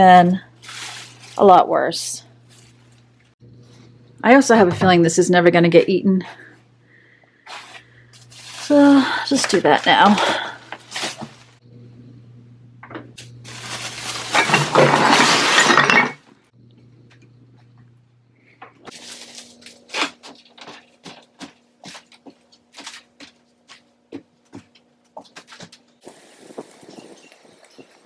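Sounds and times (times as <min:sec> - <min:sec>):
refuse crashing with glass clinking: 0:13.9 - 0:16.3.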